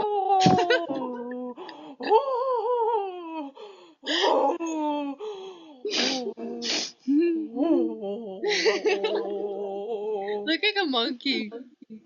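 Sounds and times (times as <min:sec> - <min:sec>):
girl whining vocal noises: 0:00.0 - 0:05.2, 0:05.9 - 0:10.5
girl breathy huffs: 0:05.2 - 0:07.0.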